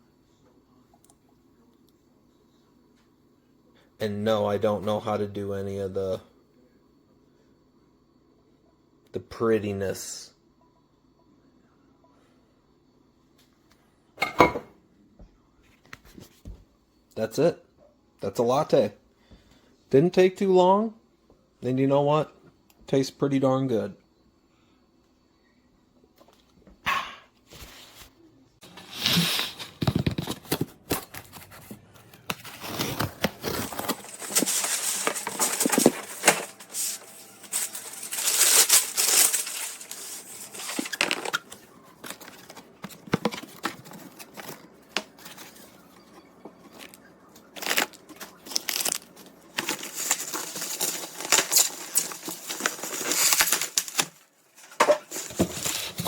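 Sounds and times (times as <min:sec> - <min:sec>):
packaging rustling and tearing: 0:28.9 - 0:45.8, 0:46.7 - 0:56.0.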